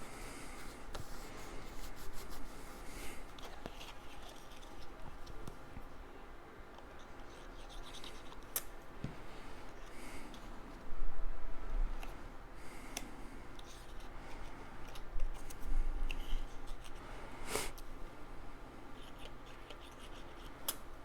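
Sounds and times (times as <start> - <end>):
paper scratching and rustling: 0.6 - 5.4.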